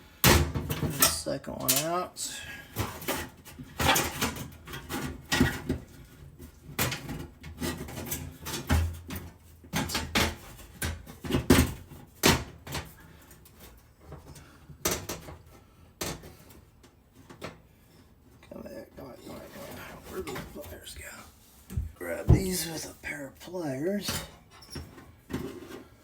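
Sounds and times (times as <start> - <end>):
metallic clatter of tools in oven: 0.5 - 5.8.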